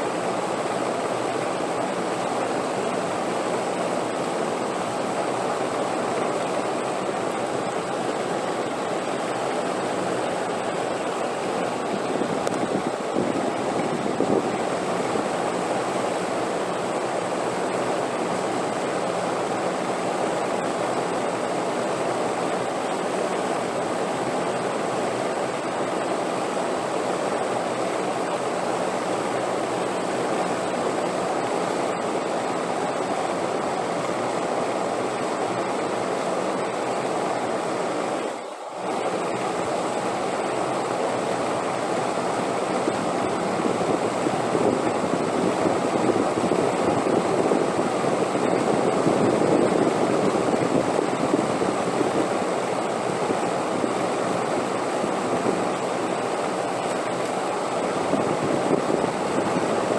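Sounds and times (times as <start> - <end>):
rushing wind: 9.8 - 16.3, 41.5 - 59.9.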